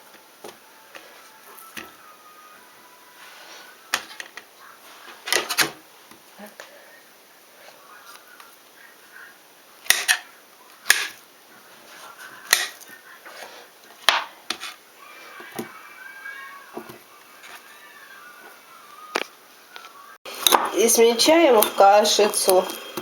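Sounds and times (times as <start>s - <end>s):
kitchen items knocking and clicking: 12.5s - 12.9s, 14.0s - 14.7s, 20.4s - 20.9s.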